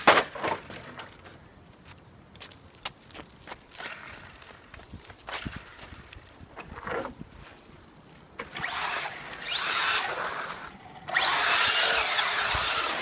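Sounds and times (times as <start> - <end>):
toy truck motor whining: 8.5 - 13.0.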